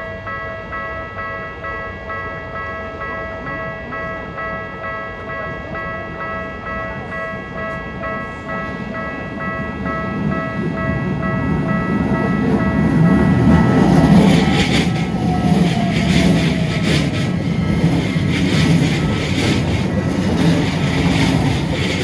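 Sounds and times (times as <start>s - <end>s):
level crossing bell clanging: 0.1s - 22.0s
approaching train rumble: 5.6s - 22.0s.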